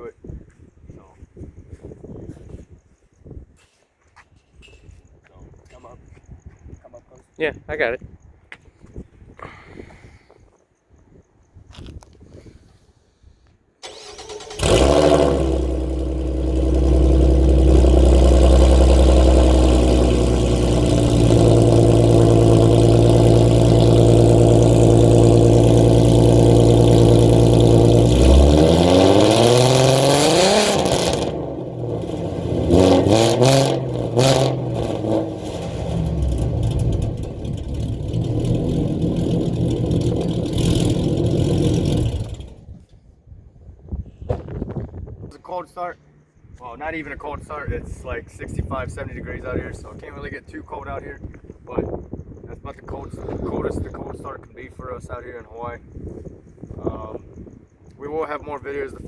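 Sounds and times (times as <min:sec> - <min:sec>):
engine revving: 0:13.8 - 0:42.6
car engine starting and idling: 0:13.8 - 0:42.7.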